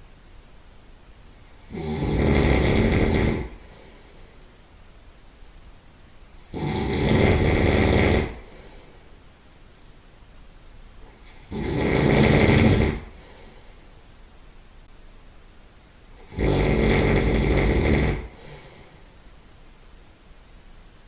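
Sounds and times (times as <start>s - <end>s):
loud nasal snoring: 1.4s - 4.2s, 6.4s - 8.9s, 11.1s - 13.7s, 16.2s - 19.1s.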